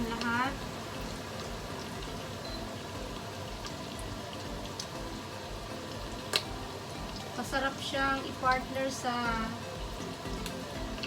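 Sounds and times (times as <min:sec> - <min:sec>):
chicken sizzling in hot oil: 0:00.0 - 0:11.0
small oil pops: 0:06.3 - 0:06.5.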